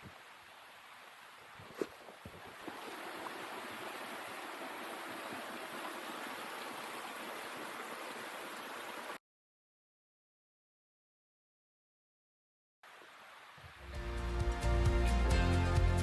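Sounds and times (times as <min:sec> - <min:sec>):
rushing water: 0:00.0 - 0:09.2, 0:12.8 - 0:15.9.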